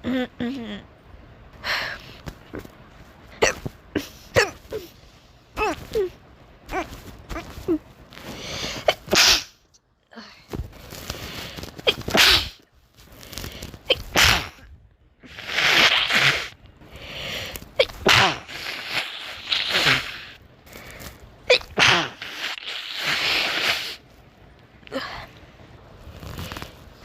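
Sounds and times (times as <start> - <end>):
person sneezing: 8.4 - 9.6, 11.8 - 12.6, 13.8 - 14.6, 15.3 - 16.5, 17.8 - 20.4, 21.5 - 24.0.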